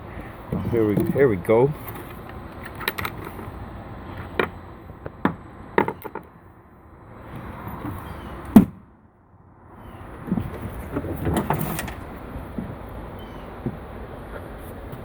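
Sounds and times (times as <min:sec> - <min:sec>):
hard objects knocking: 0:04.3 - 0:06.3.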